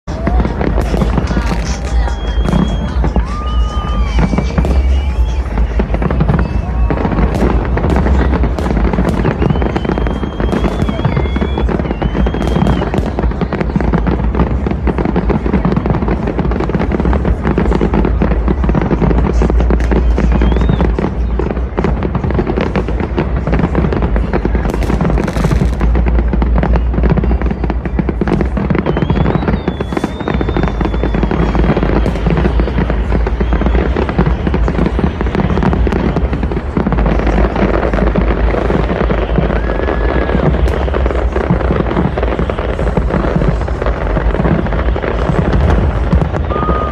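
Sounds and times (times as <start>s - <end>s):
deep rumble: 0.0s - 46.9s
fireworks bangs and crackling: 0.0s - 46.9s
rocket whistle: 0.6s - 14.1s, 19.6s - 21.4s, 26.6s - 36.3s, 44.0s - 46.9s.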